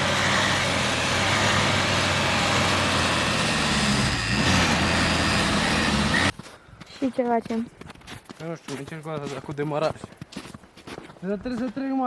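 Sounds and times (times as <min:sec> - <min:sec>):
engine running under load: 0:00.0 - 0:06.4
wheels spinning in snow: 0:00.0 - 0:06.4.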